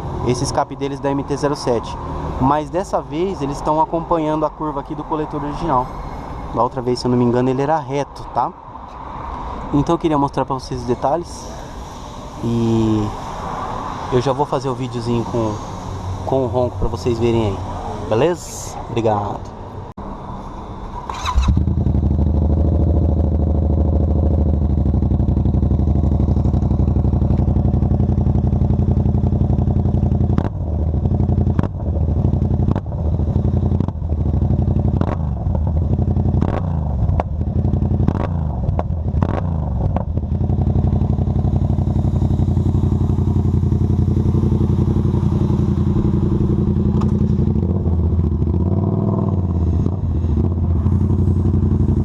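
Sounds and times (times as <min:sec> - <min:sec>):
exhaust cracks: 0:21.0 - 0:52.0
motorcycle engine revving: 0:21.0 - 0:52.0
motorcycle engine idling: 0:21.1 - 0:52.0.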